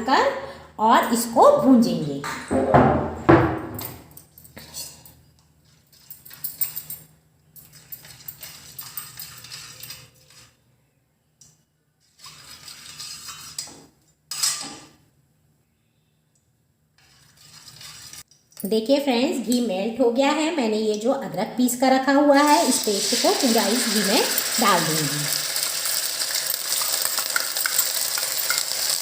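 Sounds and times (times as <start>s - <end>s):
metal utensils clinking and scraping: 4.6s - 10.6s, 12.0s - 14.9s, 17.0s - 18.3s, 22.4s - 29.0s.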